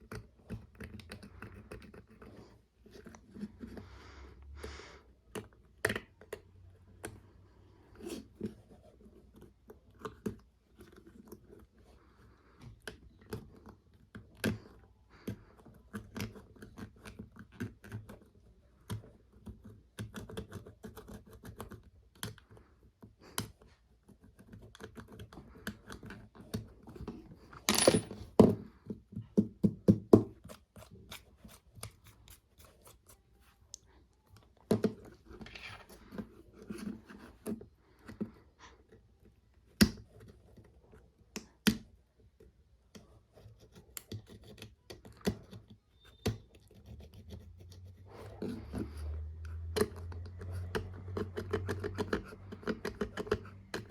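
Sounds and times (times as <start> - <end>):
small parts clicking and scraping: 27.5 - 28.6.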